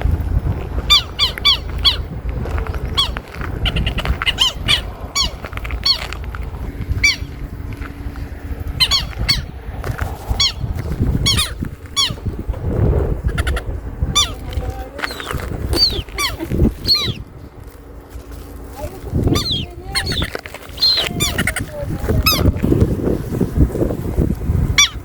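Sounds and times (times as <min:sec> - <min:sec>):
low rumble: 0:00.0 - 0:24.8
birds squawking: 0:00.6 - 0:12.5, 0:13.1 - 0:17.6, 0:18.3 - 0:22.8, 0:24.8 - 0:25.0.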